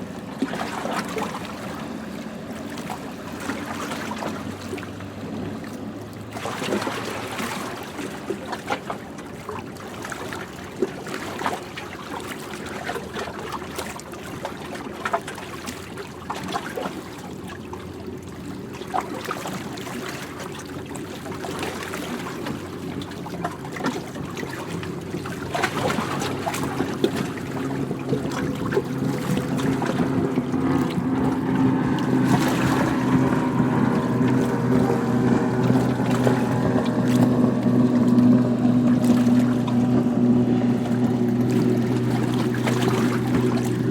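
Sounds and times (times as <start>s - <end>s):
waves washing and splashing: 0.0s - 43.9s
steady motor hum: 19.4s - 43.9s.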